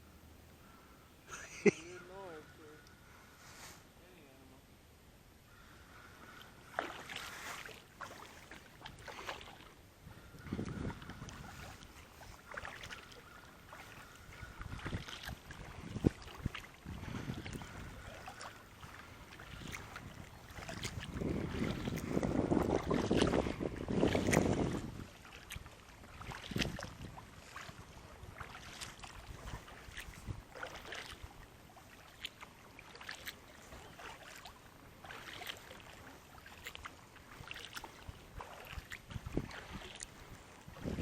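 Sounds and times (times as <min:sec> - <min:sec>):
water lapping against a boat: 0:05.5 - 0:41.0
wind on microphone: 0:10.0 - 0:13.4, 0:14.0 - 0:31.4, 0:38.0 - 0:41.0.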